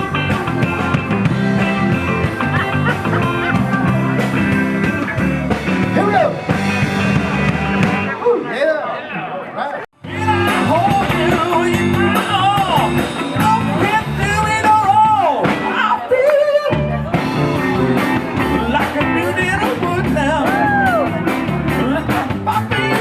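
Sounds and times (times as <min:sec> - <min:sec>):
live rock band playing: 0:00.0 - 0:09.3, 0:09.9 - 0:23.0
guitar: 0:00.0 - 0:23.0
person singing: 0:10.0 - 0:23.0.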